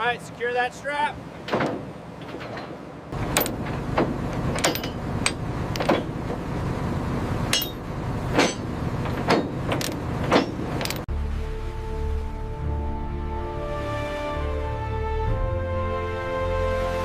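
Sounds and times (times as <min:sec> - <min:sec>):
low machinery rumble: 0:00.0 - 0:16.0
metal chains clanking: 0:01.5 - 0:06.2, 0:07.5 - 0:11.1.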